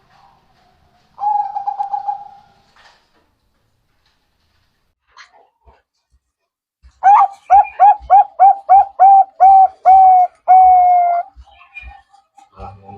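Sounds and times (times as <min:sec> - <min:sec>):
dove cooing: 0:01.2 - 0:02.6, 0:07.0 - 0:12.0.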